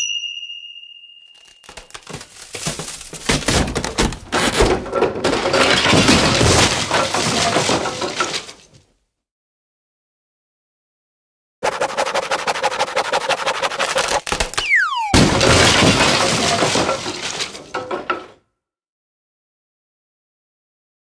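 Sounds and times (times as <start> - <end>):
little ding: 0.0 - 2.0
wooden house collapsing crash: 1.6 - 8.9, 14.1 - 18.4.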